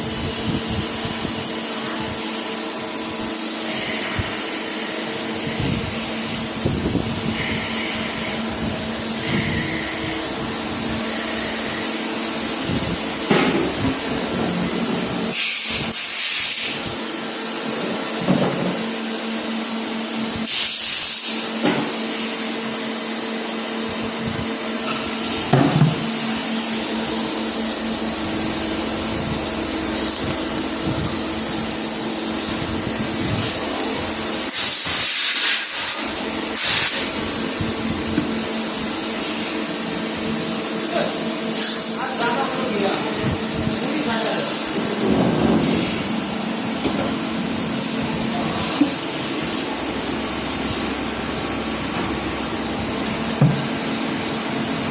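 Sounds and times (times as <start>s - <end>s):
machine hum and whine: 0.0s - 54.9s
short hissing blasts: 15.3s - 16.8s, 20.5s - 21.4s, 34.5s - 37.1s.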